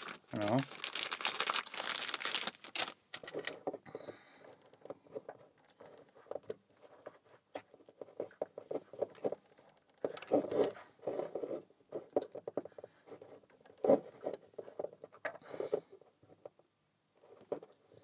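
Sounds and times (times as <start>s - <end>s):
packet crinkling: 0.0s - 3.5s.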